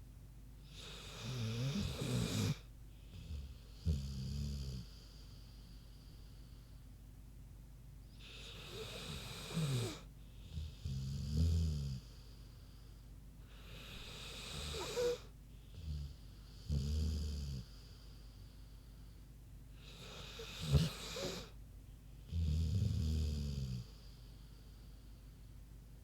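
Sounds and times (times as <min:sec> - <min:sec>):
dog snoring: 0:00.6 - 0:05.5, 0:08.1 - 0:12.3, 0:13.4 - 0:17.9, 0:19.8 - 0:21.6, 0:22.2 - 0:24.3.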